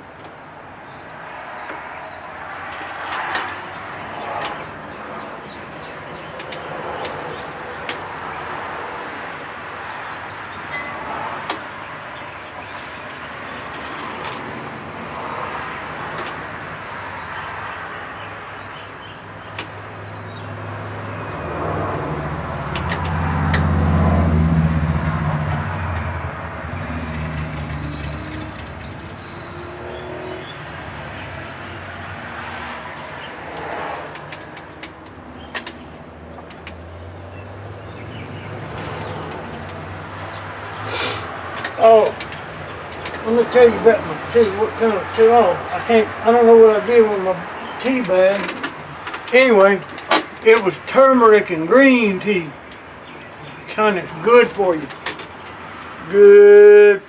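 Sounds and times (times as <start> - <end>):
passing engine hum: 19.4 - 56.2.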